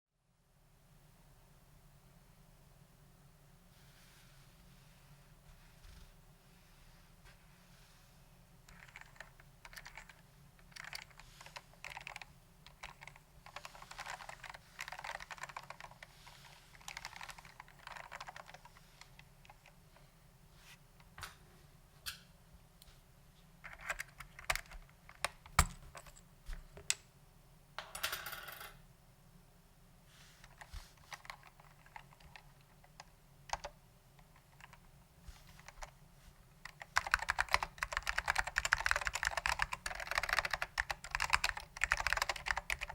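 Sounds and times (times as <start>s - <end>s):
keyboard typing clicks: 8.7s - 16.0s, 36.6s - 42.9s.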